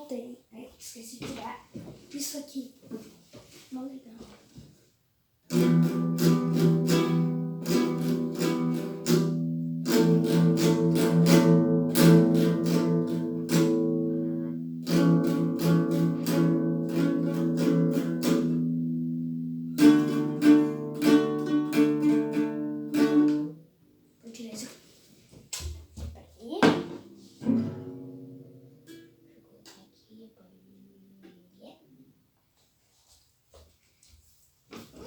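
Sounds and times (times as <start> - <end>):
strummed guitar chords: 5.5 - 23.5, 27.0 - 29.4.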